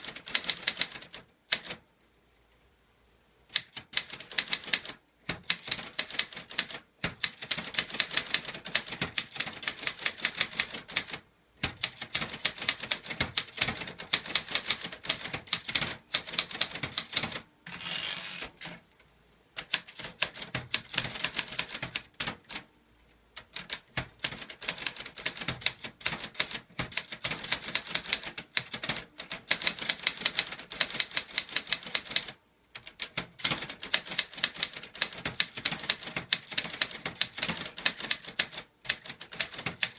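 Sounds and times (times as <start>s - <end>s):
typewriter keystrokes: 0.0s - 1.8s, 3.5s - 17.5s, 19.6s - 22.6s, 23.4s - 39.9s
typewriter bell ding: 15.8s - 17.0s.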